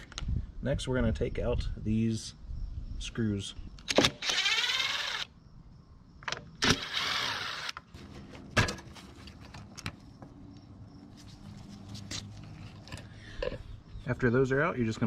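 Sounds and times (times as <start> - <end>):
cordless power driver whirring: 4.1 - 5.3, 6.6 - 7.8.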